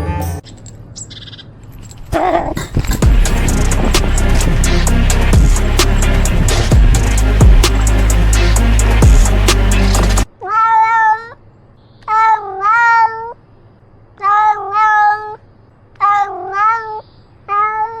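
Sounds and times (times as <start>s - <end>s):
music: 0.0s - 0.4s, 3.0s - 10.3s
cat meowing: 10.4s - 11.4s, 12.0s - 13.4s, 14.2s - 15.4s, 16.0s - 18.0s.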